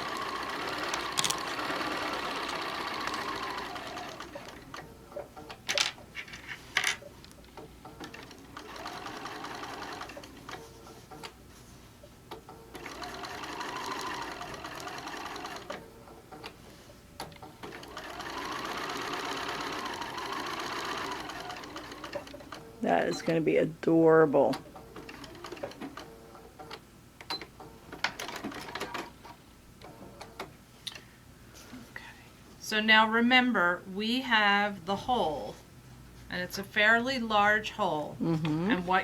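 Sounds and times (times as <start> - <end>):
electric sewing machine stitching: 0.0 - 4.8, 8.0 - 10.6, 12.7 - 15.8, 17.5 - 22.8, 24.4 - 26.4, 28.0 - 29.2.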